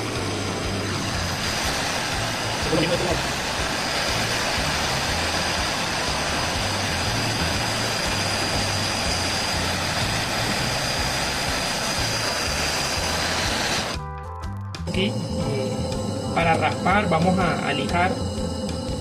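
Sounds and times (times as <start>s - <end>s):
brazing torch roaring hiss: 0.0s - 14.0s.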